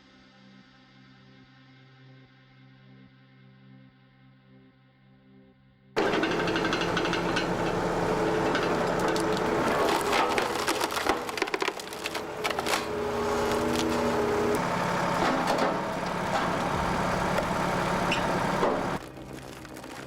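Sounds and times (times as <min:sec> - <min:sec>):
machine engine humming: 0:06.0 - 0:20.0
wood cracking and splintering: 0:06.0 - 0:20.0.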